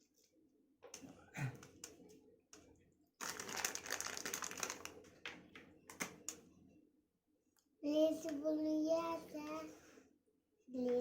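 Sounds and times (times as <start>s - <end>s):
crinkling and rustling: 3.2s - 6.4s.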